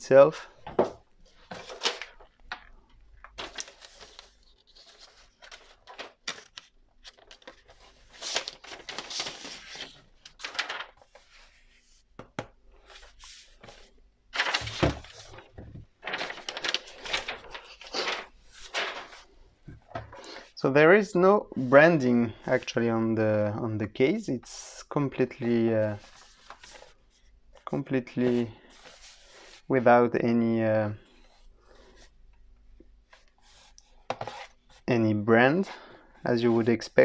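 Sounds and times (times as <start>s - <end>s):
rustling of wrapping: 1.2s - 11.8s, 12.8s - 20.5s, 25.9s - 27.4s.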